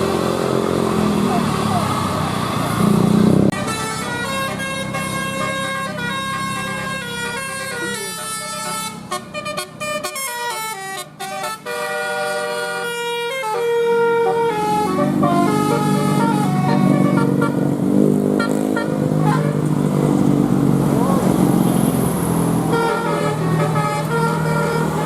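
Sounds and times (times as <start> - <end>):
bus musical horn tune: 3.5 - 19.8, 22.6 - 25.0.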